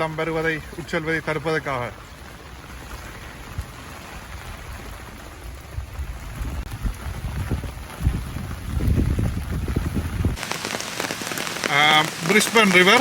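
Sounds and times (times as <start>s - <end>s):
steady rain falling: 0.0s - 13.0s.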